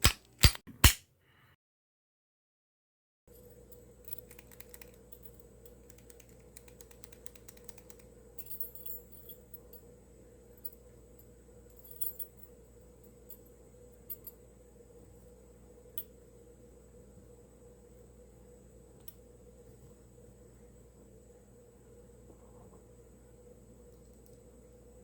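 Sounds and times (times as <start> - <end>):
faint steady hum: 3.3 - 25.0
lock pick clicking in a lock: 4.1 - 8.1.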